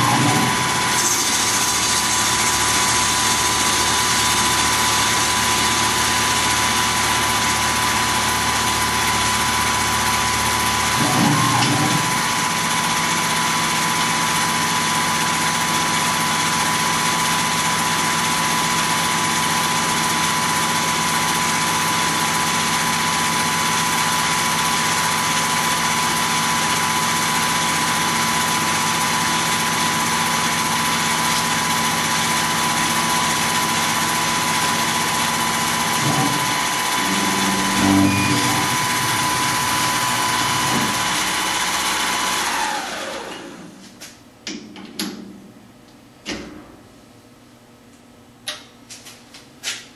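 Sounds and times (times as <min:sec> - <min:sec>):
milling machine hiss and whine: 0:32.0 - 0:43.6.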